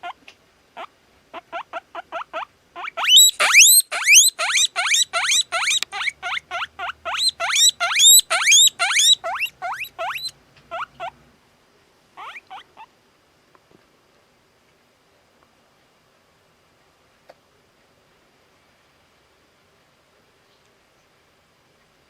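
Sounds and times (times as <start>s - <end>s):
guinea pig wheeking squeals: 0.8s - 11.2s, 12.2s - 12.9s.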